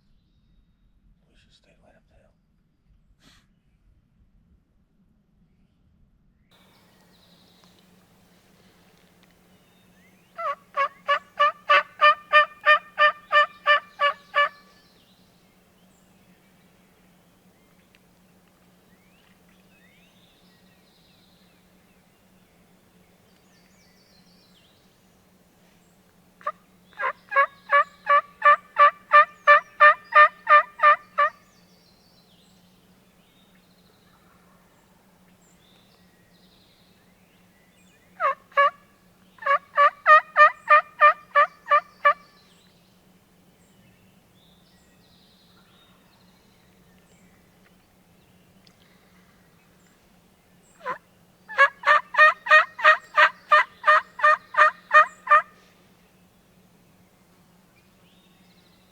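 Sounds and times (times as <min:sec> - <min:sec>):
wild turkey yelps: 0:10.4 - 0:14.8, 0:26.4 - 0:31.4, 0:38.2 - 0:42.3, 0:50.8 - 0:55.6.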